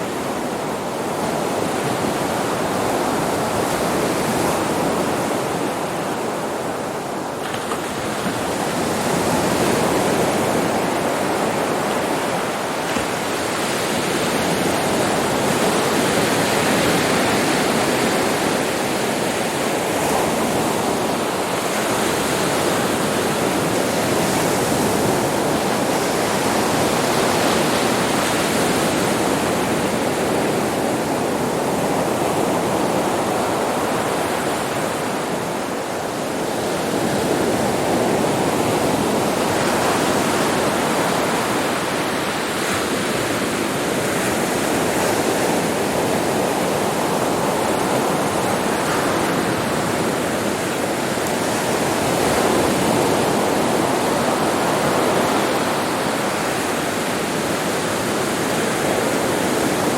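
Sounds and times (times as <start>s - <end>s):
sea waves breaking on beach: 0.0s - 59.9s.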